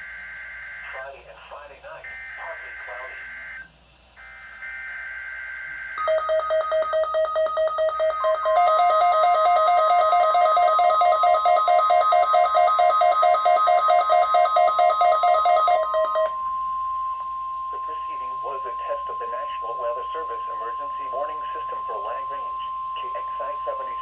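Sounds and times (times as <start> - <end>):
steady warning alarm tone: 2.0 - 24.0
fast pulsing electronic alert beep: 6.0 - 16.4.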